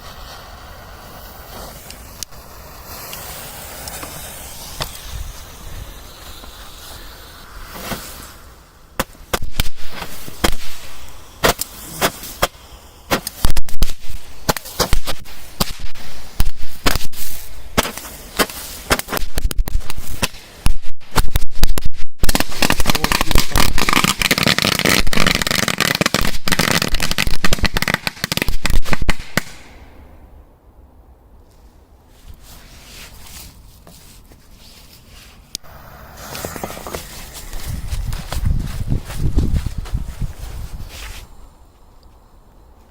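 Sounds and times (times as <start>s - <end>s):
firework bangs and pops: 0.0s - 29.8s, 35.6s - 40.9s
firework hissing: 0.0s - 29.9s, 34.8s - 41.7s
dense crackling hiss: 0.0s - 42.9s.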